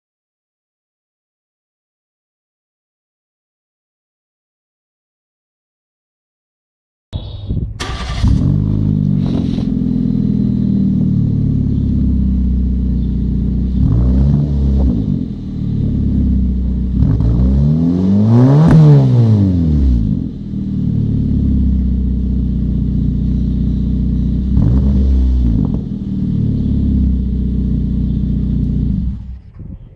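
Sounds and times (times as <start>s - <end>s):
car engine idling: 7.2s - 29.9s
engine revving: 7.8s - 29.9s.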